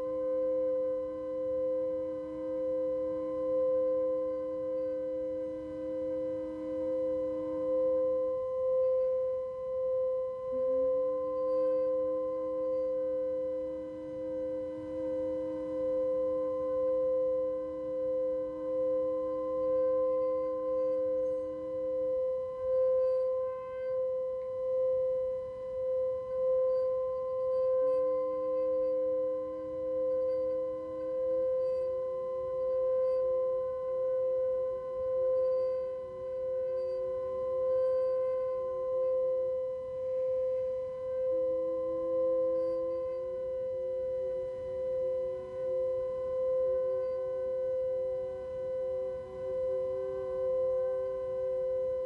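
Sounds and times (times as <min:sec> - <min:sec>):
lower singing bowl tone: 0:00.0 - 0:52.0
singing bowl tone: 0:00.0 - 0:52.0.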